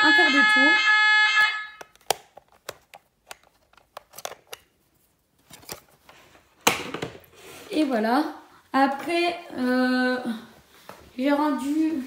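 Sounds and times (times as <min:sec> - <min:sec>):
fire alarm tone: 0:00.0 - 0:01.9.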